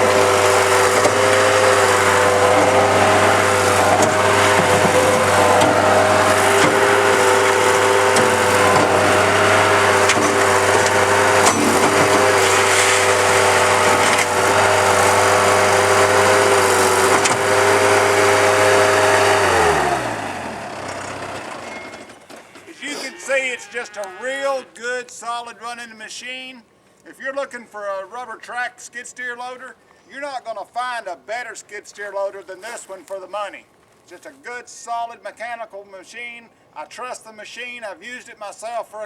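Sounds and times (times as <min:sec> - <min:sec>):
diesel engine idling high: 0:00.0 - 0:22.2
faint engine knocks: 0:00.0 - 0:22.8
engine shutting off: 0:00.0 - 0:23.4.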